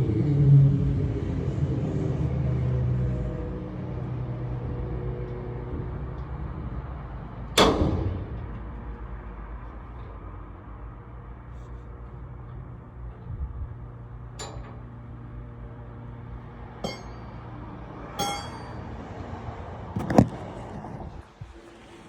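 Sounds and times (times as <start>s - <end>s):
steady low hum: 0.0s - 22.0s
crowbar clanging on padlock: 16.8s - 17.3s, 18.2s - 18.9s.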